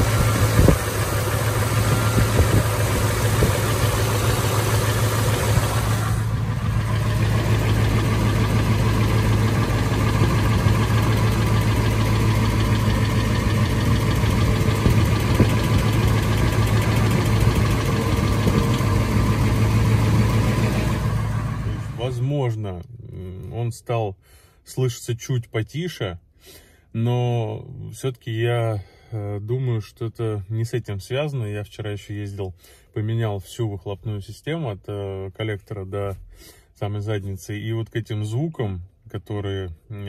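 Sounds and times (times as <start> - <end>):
car engine idling: 0.0 - 22.2.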